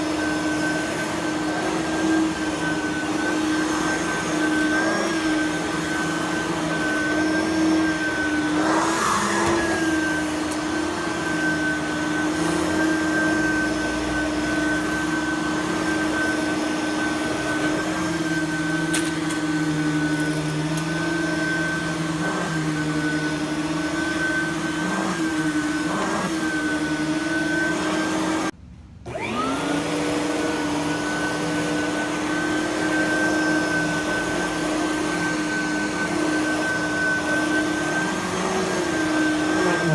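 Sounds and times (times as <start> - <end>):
vacuum cleaner running on carpet: 0.0 - 39.9.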